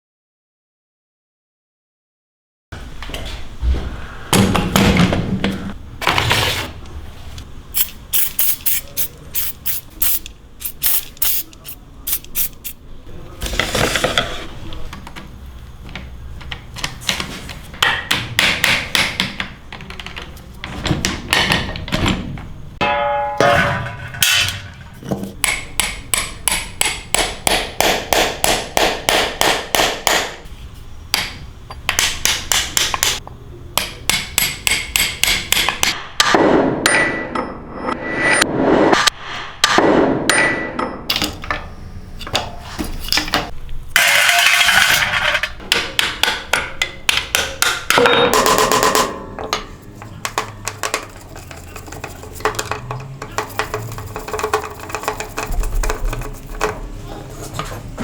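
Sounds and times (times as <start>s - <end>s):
short metallic ring: 22.8s - 23.8s.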